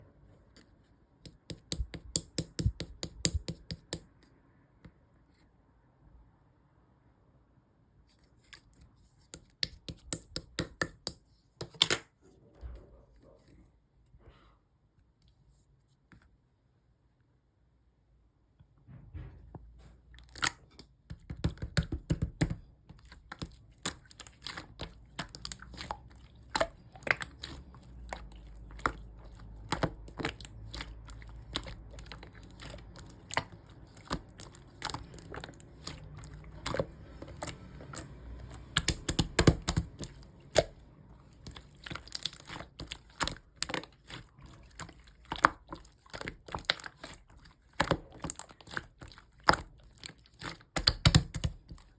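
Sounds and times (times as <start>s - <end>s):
slime squishing: 0.4s - 4.2s, 8.1s - 13.6s, 19.8s - 51.9s
slime crackling and popping: 21.3s - 51.9s.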